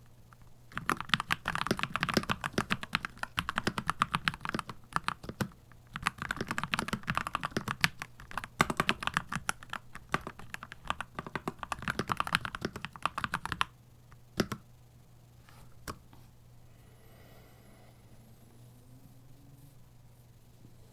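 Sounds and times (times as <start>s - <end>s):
mechanical keyboard typing: 0.4s - 14.6s.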